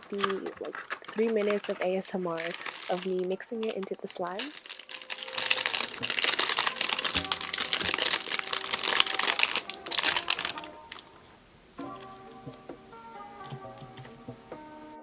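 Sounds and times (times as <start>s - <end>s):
background music: 0.0s - 15.0s
sticky crackly slime pops: 3.6s - 11.2s.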